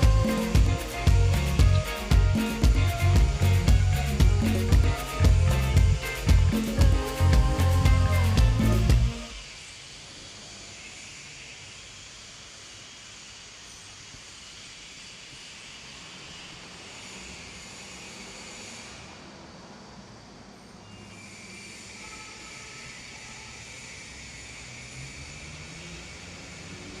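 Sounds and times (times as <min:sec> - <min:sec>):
low hum: 0:00.0 - 0:09.5
even hiss: 0:00.0 - 0:27.0.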